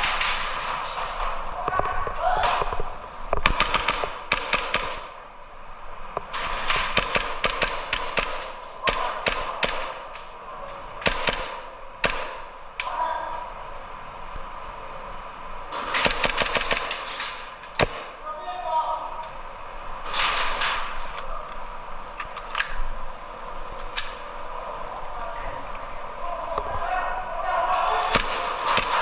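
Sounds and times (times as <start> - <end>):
airsoft guns firing: 0.0 - 1.5, 2.4 - 5.2, 6.3 - 10.4, 11.0 - 12.9, 15.7 - 18.3, 27.8 - 29.0.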